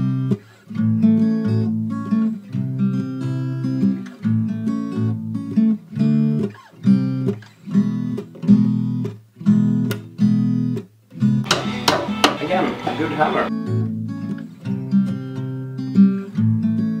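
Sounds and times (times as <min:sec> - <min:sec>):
strummed acoustic guitar chords: 0:11.3 - 0:17.0.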